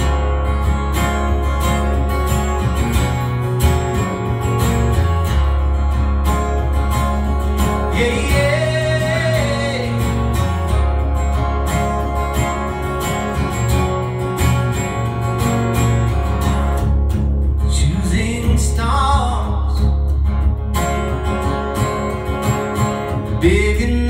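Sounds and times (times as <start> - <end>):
acoustic guitar strumming: 0.0 - 24.0
wordless vocal line: 7.6 - 10.9.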